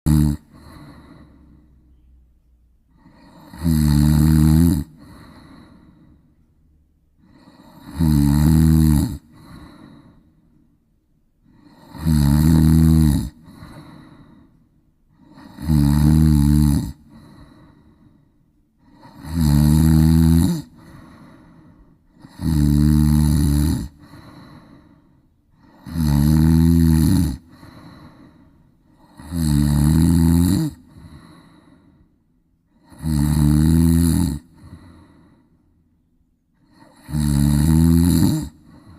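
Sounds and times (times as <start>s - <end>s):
woman snoring loudly: 0.1s - 1.6s, 3.0s - 6.1s, 7.2s - 10.2s, 11.5s - 14.4s, 15.2s - 18.0s, 18.8s - 25.0s, 25.6s - 31.7s, 32.7s - 35.1s, 36.6s - 38.9s.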